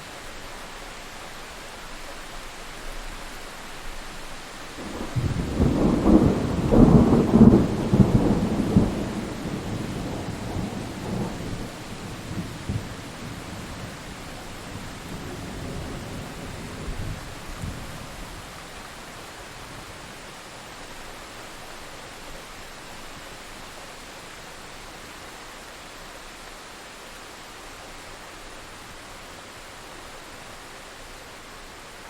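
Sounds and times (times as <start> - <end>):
heavy rain: 0.0 - 32.0
thunder rumbling: 4.8 - 18.8.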